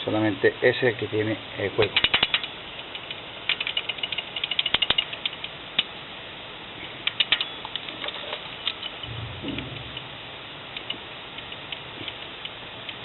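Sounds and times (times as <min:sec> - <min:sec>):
ratchet wrench clicking: 0:01.8 - 0:05.9, 0:07.0 - 0:10.1.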